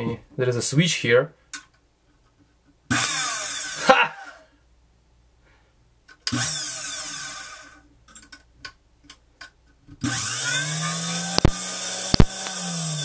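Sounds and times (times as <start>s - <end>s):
mixer motor whirring: 2.9s - 3.9s, 6.3s - 7.8s, 10.0s - 13.0s
switch clicks: 11.4s - 12.6s.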